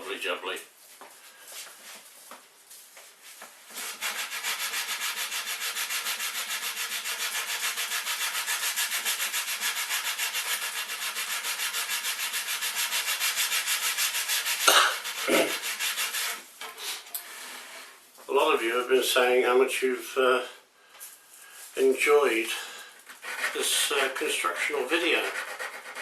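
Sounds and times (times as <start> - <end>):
rasping file strokes: 3.7 - 16.4, 23.1 - 26.0.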